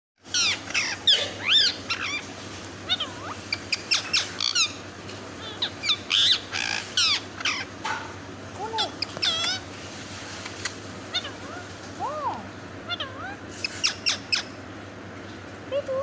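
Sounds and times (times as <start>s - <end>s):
parrot screeching: 0.2s - 4.8s, 5.4s - 7.7s, 8.7s - 9.7s, 11.1s - 11.7s, 12.8s - 14.6s.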